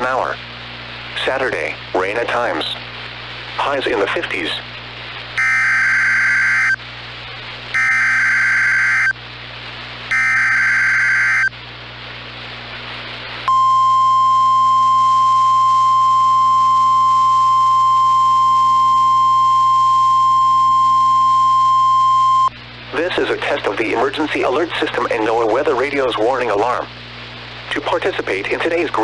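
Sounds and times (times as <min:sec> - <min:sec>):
steady warning alarm tone: 0:05.4 - 0:06.8, 0:07.8 - 0:09.2, 0:10.1 - 0:11.5
warbling data tones: 0:05.4 - 0:06.8, 0:07.8 - 0:09.2, 0:10.1 - 0:11.5.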